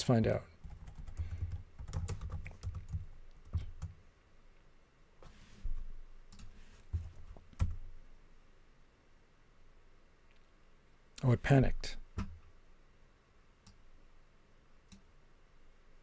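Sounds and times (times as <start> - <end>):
computer keyboard typing: 0.6 - 4.0, 7.1 - 7.8.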